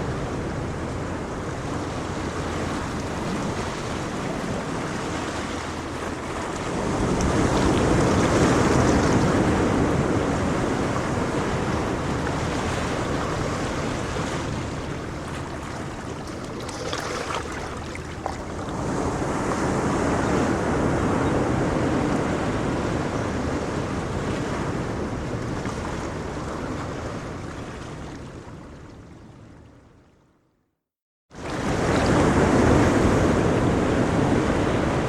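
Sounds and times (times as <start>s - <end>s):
ocean waves rushing: 0.0s - 27.3s.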